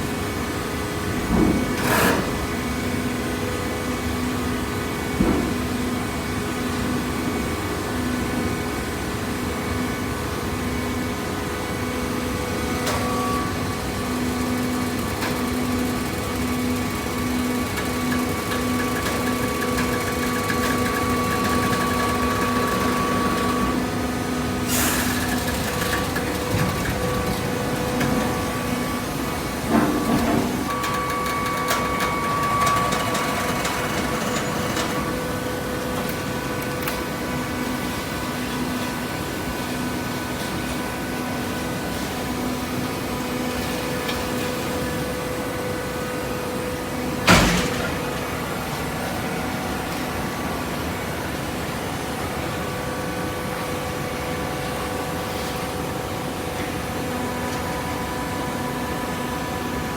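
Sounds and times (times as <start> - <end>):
baler pump motor humming: 10.8 - 52.4.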